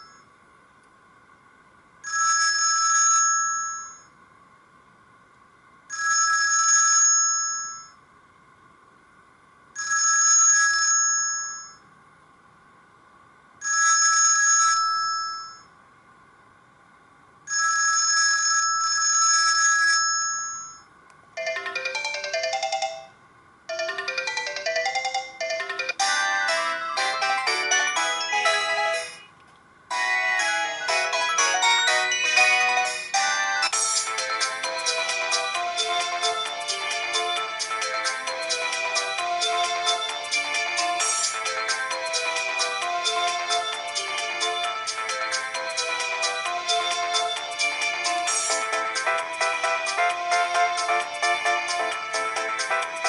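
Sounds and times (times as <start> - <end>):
fast melody ringtone: 0.0 - 0.2, 21.4 - 29.3, 29.9 - 53.0
pitched phone ring tone: 0.0 - 0.3, 2.0 - 4.1, 5.9 - 8.0, 9.8 - 11.8, 13.6 - 15.7, 17.5 - 29.3, 29.9 - 53.0.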